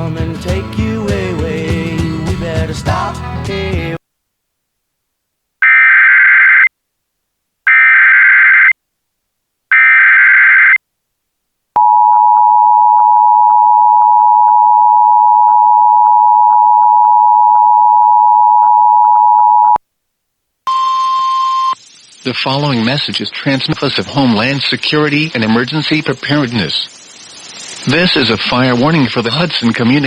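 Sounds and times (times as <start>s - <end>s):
screeching digital data bursts: 20.7s - 30.0s.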